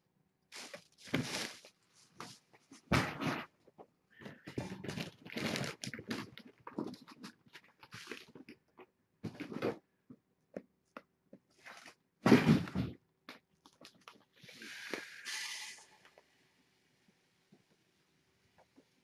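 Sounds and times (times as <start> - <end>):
rustling: 0.5 - 3.5.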